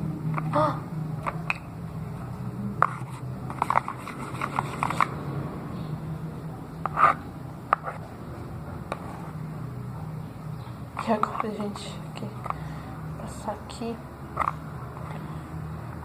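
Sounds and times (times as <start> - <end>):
steady low hum: 0.0 - 16.0
clicks and scrapes of handling: 2.8 - 5.1, 6.8 - 8.1, 8.9 - 9.4, 10.9 - 12.7, 14.4 - 15.3.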